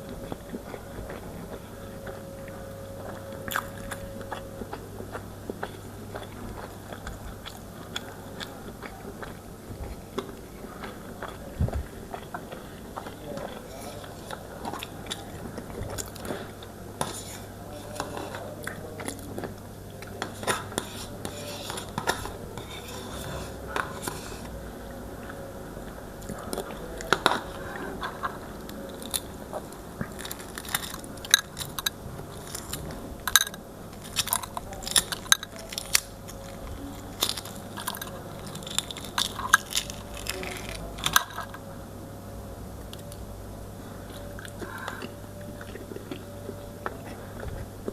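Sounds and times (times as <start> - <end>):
food crunching: 0.0 - 41.8, 44.0 - 47.9
person chewing and biting: 0.1 - 24.5, 28.9 - 41.2.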